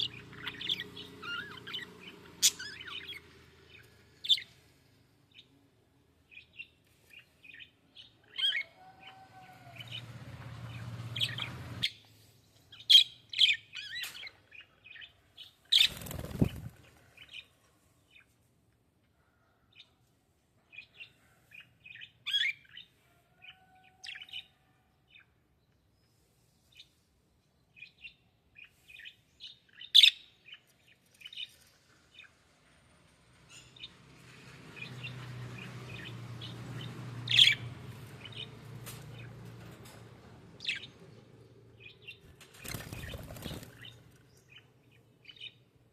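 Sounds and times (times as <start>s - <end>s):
small birds chirping: 0.0s - 18.4s, 20.6s - 32.5s, 33.4s - 40.0s, 40.6s - 45.9s
wing flapping: 15.8s - 17.0s, 42.2s - 44.2s.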